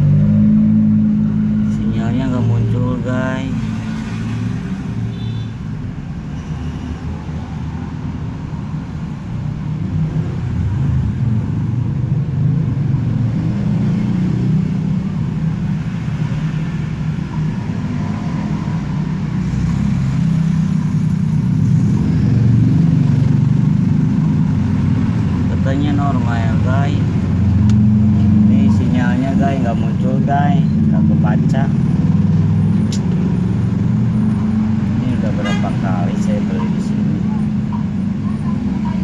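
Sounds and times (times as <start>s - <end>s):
engine running low rumble: 14.6s - 39.0s.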